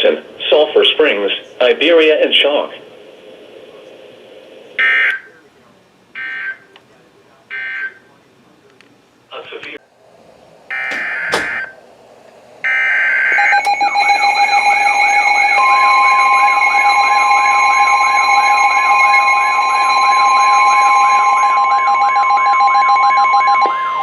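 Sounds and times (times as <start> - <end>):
steady alarm tone: 10.7 - 11.8, 12.6 - 24.0
warbling alarm: 10.7 - 11.8, 12.6 - 24.0.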